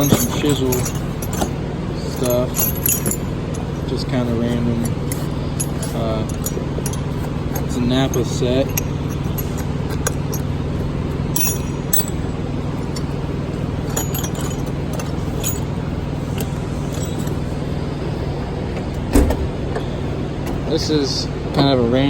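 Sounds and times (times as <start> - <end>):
metal hand tools clinking: 0.0 - 10.5, 11.3 - 13.2, 13.8 - 17.4
steady background hum: 0.0 - 22.0.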